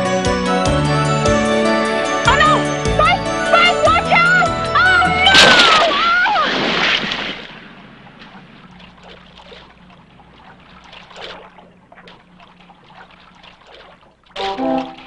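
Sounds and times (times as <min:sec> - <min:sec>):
water splashing: 0:03.6 - 0:15.0
water trickling and dripping: 0:07.4 - 0:15.0.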